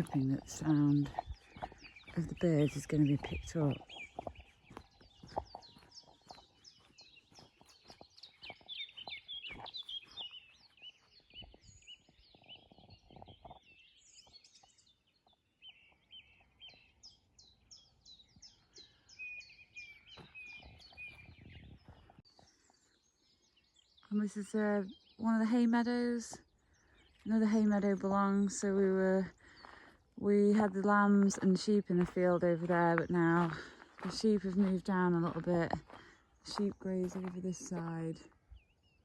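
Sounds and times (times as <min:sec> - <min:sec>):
songbirds chirping and trilling: 0:00.0 - 0:39.0.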